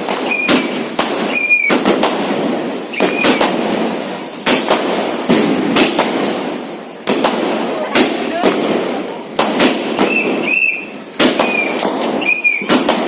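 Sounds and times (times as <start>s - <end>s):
firework bangs: 0.0s - 13.0s
firework crackling: 0.0s - 13.0s
firework whistle: 0.1s - 1.8s, 2.9s - 3.5s, 10.0s - 12.9s.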